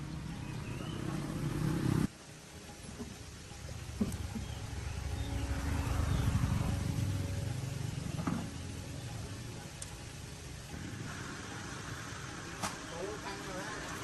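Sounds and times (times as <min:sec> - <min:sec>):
low engine rumble: 0:00.0 - 0:14.0.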